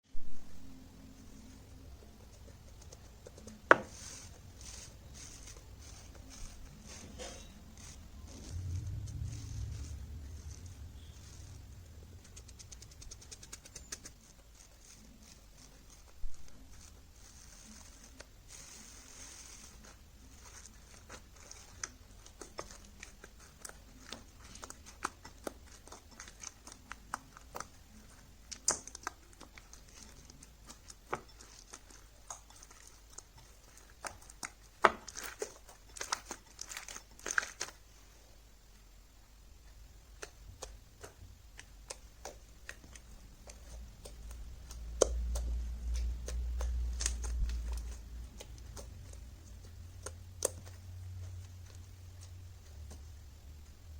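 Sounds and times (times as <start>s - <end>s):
slime squished by hand: 2.7s - 37.9s.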